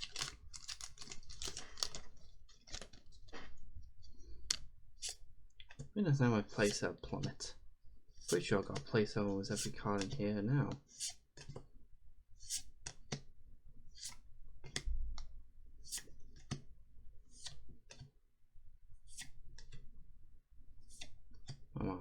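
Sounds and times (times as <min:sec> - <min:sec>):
cards flicking and snapping: 0:17.3 - 0:18.0.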